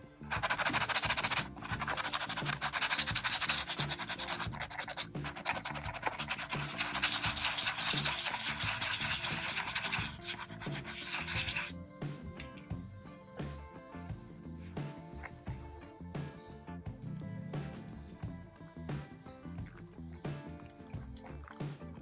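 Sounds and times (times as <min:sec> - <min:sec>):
background music: 0:00.0 - 0:22.0
abrasive rubbing on plastic: 0:00.3 - 0:11.7.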